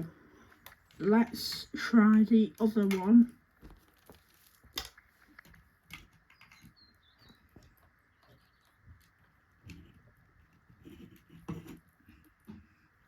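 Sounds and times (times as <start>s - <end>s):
faint high chirp: 6.3s - 7.7s.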